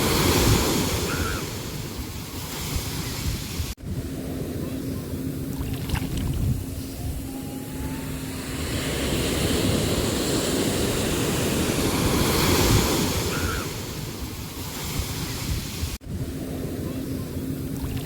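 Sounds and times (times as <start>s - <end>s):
sea waves surging on shore: 0.0s - 4.7s, 7.7s - 16.8s
low rumble of surf: 0.0s - 18.0s.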